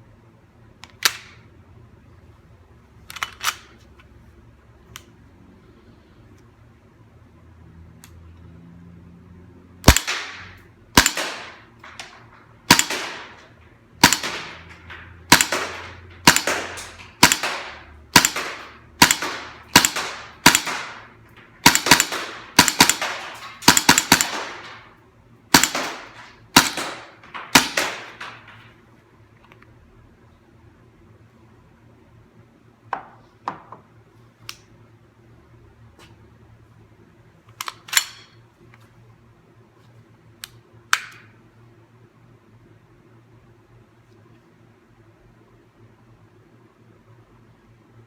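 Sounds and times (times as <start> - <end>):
suppressed pistol shots: 9.8 - 24.9, 25.5 - 28.6.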